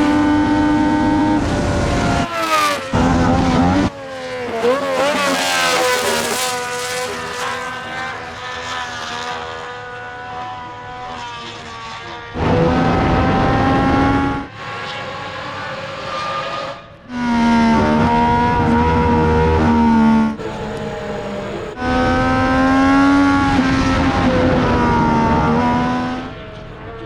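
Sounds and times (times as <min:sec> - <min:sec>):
racing car engine at high revs: 0:00.0 - 0:27.0.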